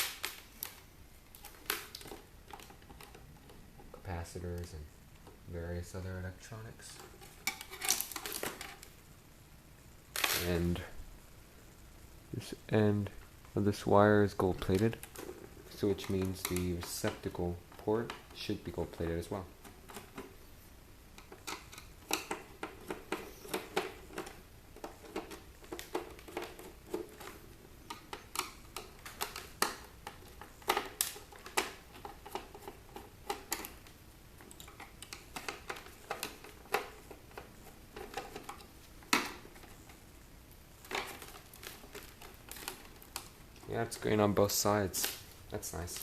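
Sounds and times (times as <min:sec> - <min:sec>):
small parts clicking and rattling: 0:06.8 - 0:08.9, 0:21.1 - 0:46.0.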